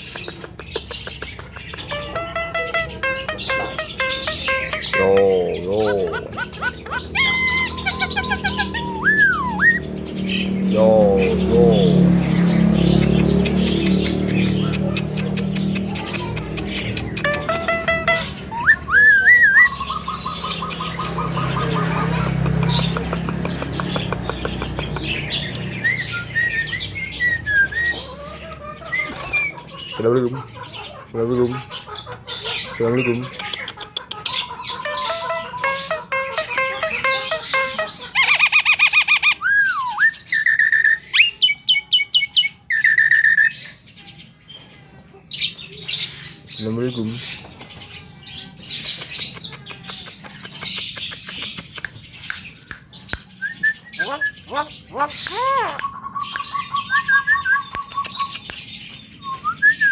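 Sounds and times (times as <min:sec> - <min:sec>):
quick bird clicks: 0:00.0 - 0:02.0, 0:48.9 - 0:53.4
bird clicking notes: 0:00.0 - 0:05.6, 0:12.8 - 0:19.0
myna rasping chatter: 0:01.7 - 0:24.2, 0:25.6 - 0:38.7, 0:53.8 - 0:56.5
bird whistled notes: 0:06.6 - 0:09.8, 0:17.2 - 0:20.8.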